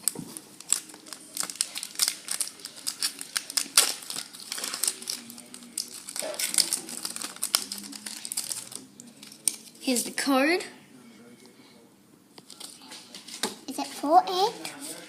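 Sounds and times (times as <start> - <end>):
foil wrapper crinkling and tearing: 0.0 - 9.8, 12.5 - 13.2.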